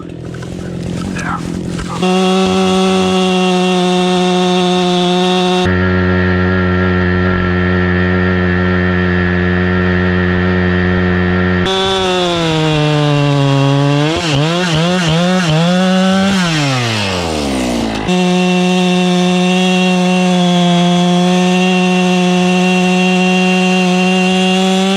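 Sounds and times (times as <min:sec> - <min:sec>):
chainsaw cutting log: 0:00.0 - 0:24.9.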